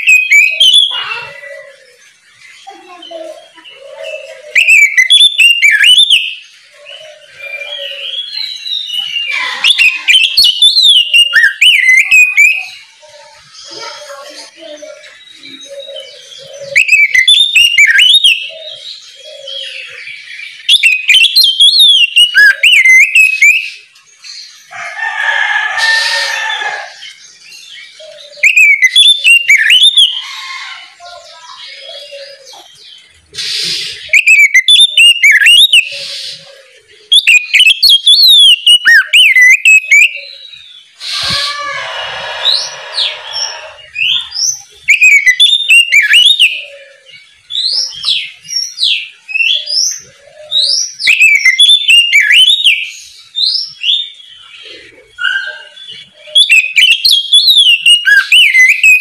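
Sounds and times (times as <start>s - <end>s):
bird whistled song phrases: 0.0s - 23.9s, 27.9s - 32.7s, 33.4s - 59.0s
bird harsh rasping calls: 24.6s - 27.2s, 27.9s - 48.4s.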